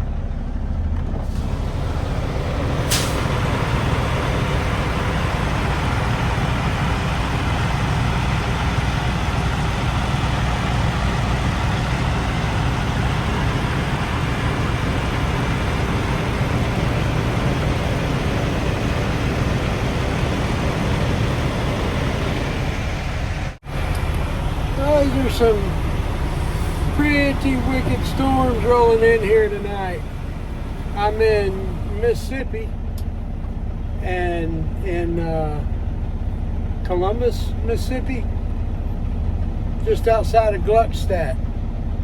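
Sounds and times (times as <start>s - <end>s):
deep rumble: 0.0s - 42.0s
wind: 0.0s - 42.0s
rain on truck: 1.2s - 29.2s.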